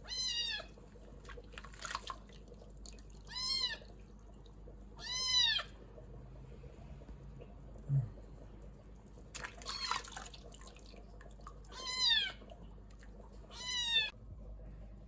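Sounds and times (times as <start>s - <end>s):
kitten meowing: 0.0s - 0.7s, 5.0s - 5.7s, 13.5s - 14.1s.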